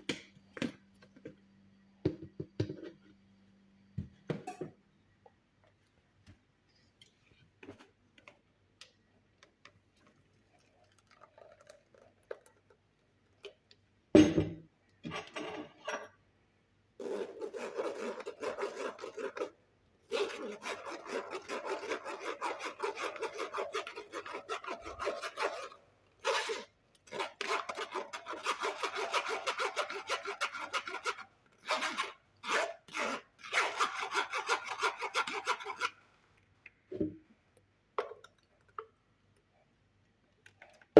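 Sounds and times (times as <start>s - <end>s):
fast rasping rubbing strokes: 20.1s - 35.9s.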